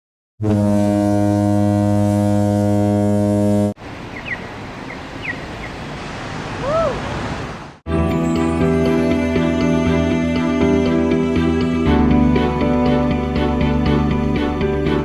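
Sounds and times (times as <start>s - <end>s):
deep steady horn blast: 0.4s - 3.8s
outdoor ambient noise: 1.2s - 9.5s.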